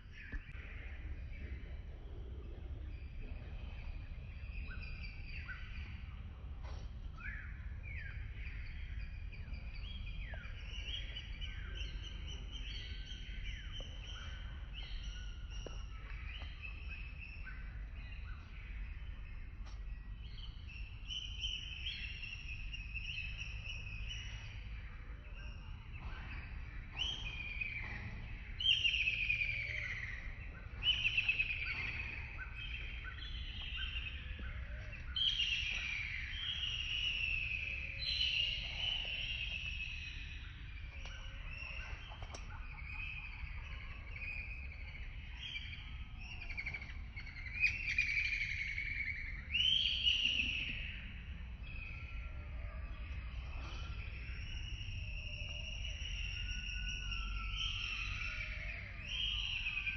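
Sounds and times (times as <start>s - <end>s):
steady low rumble: 0.0s - 21.8s
birds chirping and singing: 0.0s - 59.9s.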